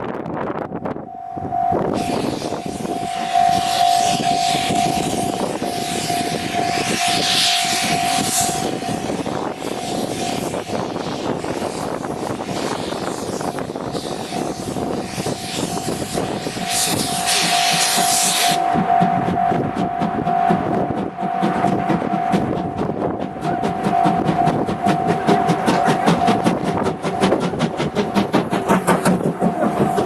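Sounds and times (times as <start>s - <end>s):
steam locomotive running by: 0.0s - 30.0s
steady high tone: 0.8s - 11.4s, 14.2s - 30.0s.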